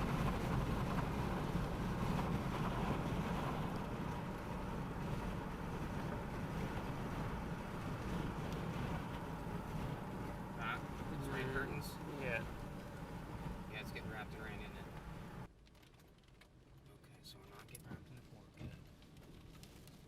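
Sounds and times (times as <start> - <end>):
strong gusting wind on microphone: 0.0 - 13.8.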